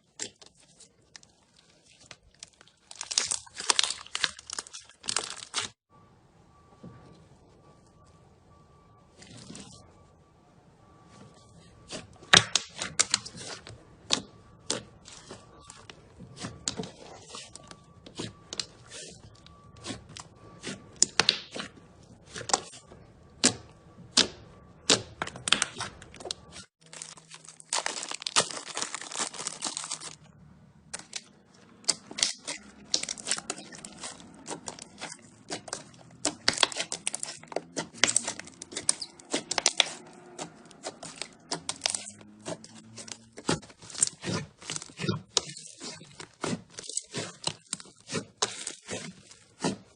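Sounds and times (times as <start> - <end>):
slime squeezed crackling and popping: 2.0 - 5.8, 11.9 - 21.7, 23.4 - 30.2, 30.9 - 49.9.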